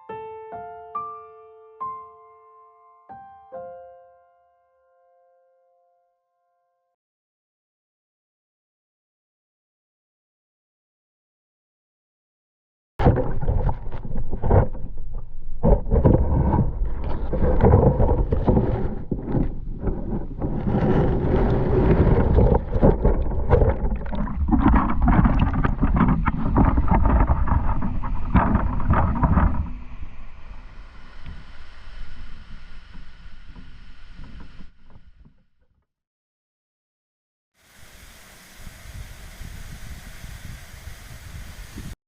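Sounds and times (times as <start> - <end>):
wind buffeting on microphone: 15.7 - 31.6, 38.5 - 42.0
waterfall rushing: 37.6 - 42.0.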